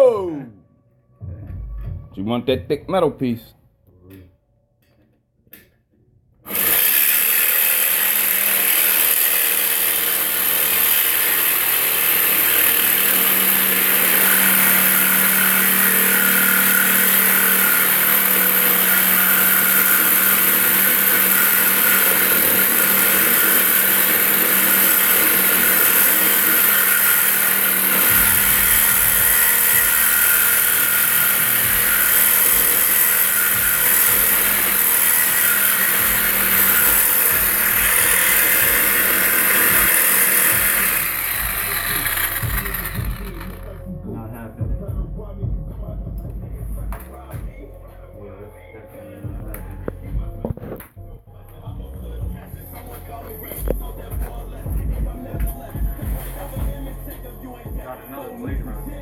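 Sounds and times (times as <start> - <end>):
power saw cutting steel pipe: 6.4 - 43.9, 52.5 - 57.6.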